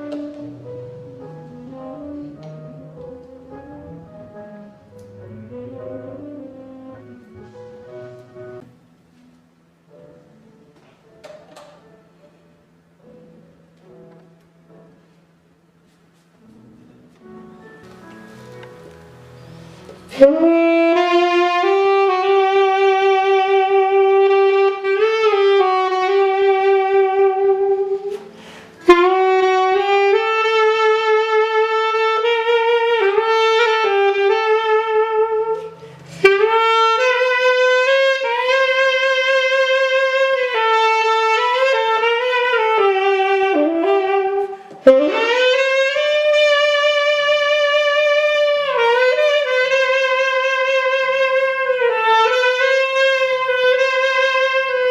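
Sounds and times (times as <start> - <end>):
solo saxophone melody: 0.0 - 8.7, 17.6 - 54.9.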